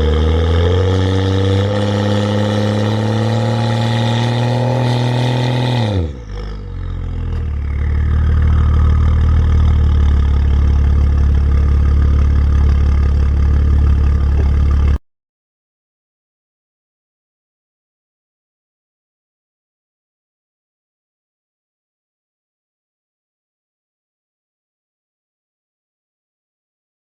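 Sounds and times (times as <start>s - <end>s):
deep exhaust drone: 0.0s - 15.0s
car engine idling: 6.2s - 15.0s.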